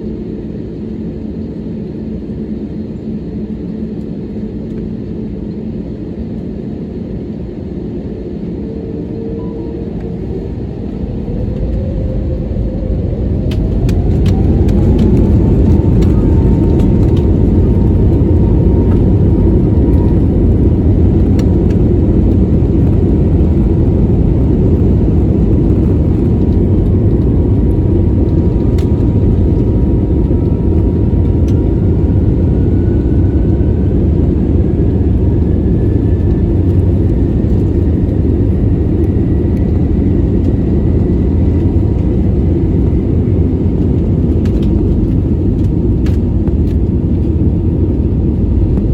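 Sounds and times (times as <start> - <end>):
jet engines spooling up: 6.4 - 48.9
faint rising tone: 8.2 - 16.3.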